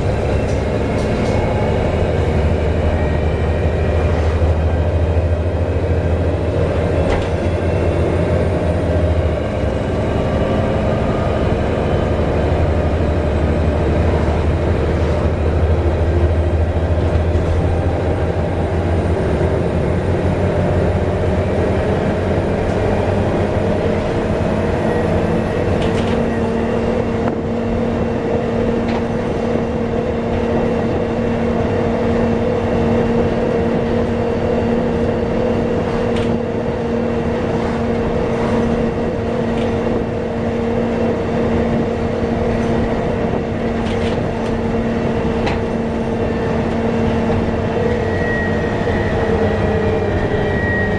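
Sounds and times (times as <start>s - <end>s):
bus engine and road noise: 0.0s - 50.9s
bus whine: 0.0s - 50.9s.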